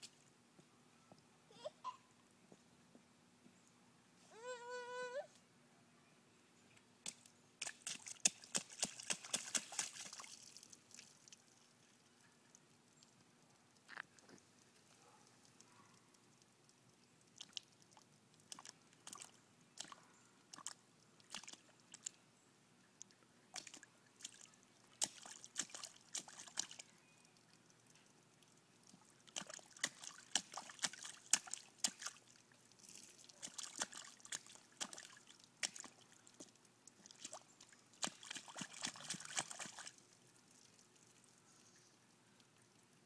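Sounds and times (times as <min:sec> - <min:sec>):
splashing in a puddle: 0:07.0 - 0:11.9, 0:17.3 - 0:22.2, 0:23.5 - 0:41.6.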